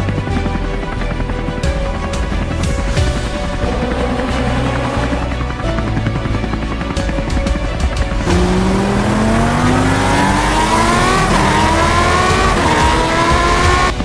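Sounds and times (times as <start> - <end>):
motorcycle engine accelerating: 2.2 - 14.0.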